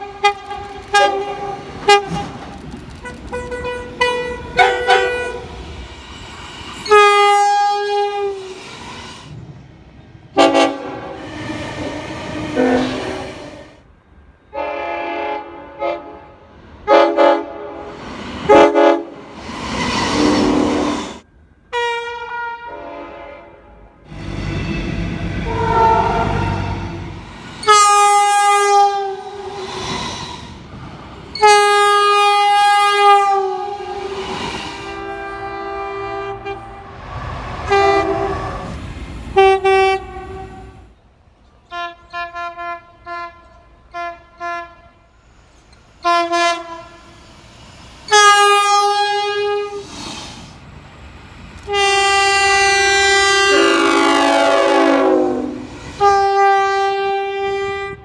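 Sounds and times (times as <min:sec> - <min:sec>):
locomotive air horn blasts: 0:00.0 - 0:05.6, 0:06.8 - 0:08.5, 0:10.4 - 0:13.6, 0:14.5 - 0:19.2, 0:21.7 - 0:29.8, 0:31.3 - 0:34.2, 0:34.8 - 0:37.0, 0:37.6 - 0:38.7, 0:39.3 - 0:40.8, 0:41.7 - 0:45.1, 0:46.0 - 0:47.1, 0:48.1 - 0:49.8, 0:51.6 - 0:58.0.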